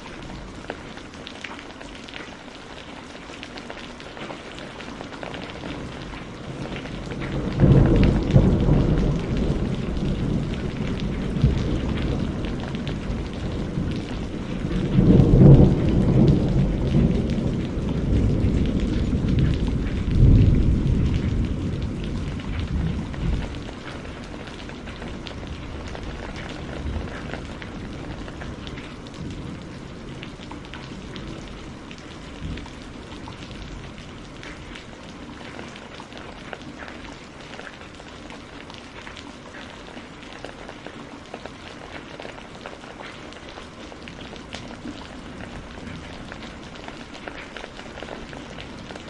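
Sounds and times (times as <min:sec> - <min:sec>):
steady rain hissing: 0:00.0 - 0:49.0
thunder rumbling: 0:05.3 - 0:35.1, 0:43.9 - 0:49.0.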